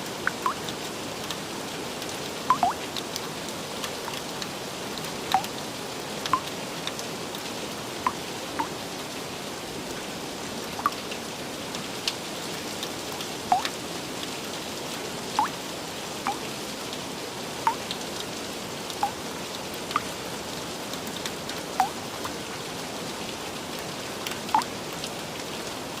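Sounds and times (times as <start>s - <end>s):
gentle rain hiss: 0.0s - 26.0s.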